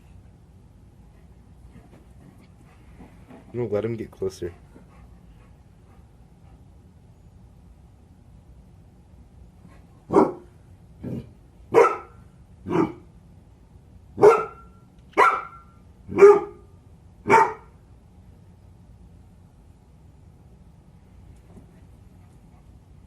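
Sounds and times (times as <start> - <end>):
dog barking: 10.1 - 10.5, 11.7 - 13.0, 14.2 - 16.6, 17.3 - 17.7.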